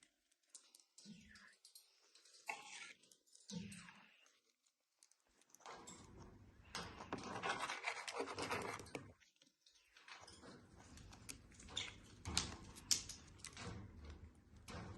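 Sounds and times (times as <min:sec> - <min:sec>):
dry scratching and rubbing: 0:07.1 - 0:09.1.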